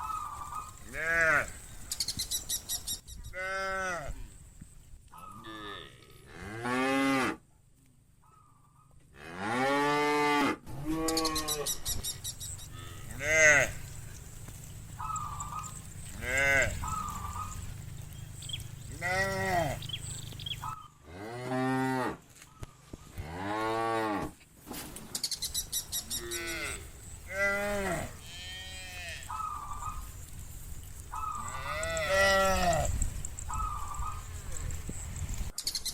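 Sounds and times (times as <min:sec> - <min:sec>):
cows mooing: 0:12.6 - 0:22.2, 0:26.1 - 0:30.0, 0:31.2 - 0:34.3.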